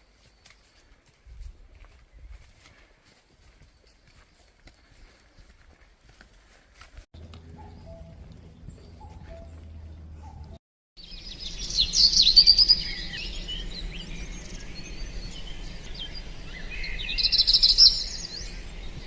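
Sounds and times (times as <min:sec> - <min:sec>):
songbirds singing and chirping: 0:07.2 - 0:19.0.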